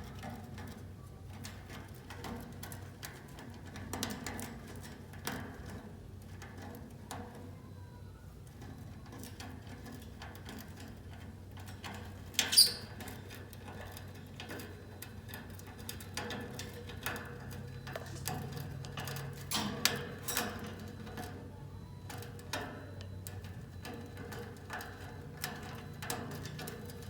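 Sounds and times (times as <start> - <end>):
birds scratching and gnawing: 8.4 - 27.0
shrill bird chirp: 12.5 - 12.9.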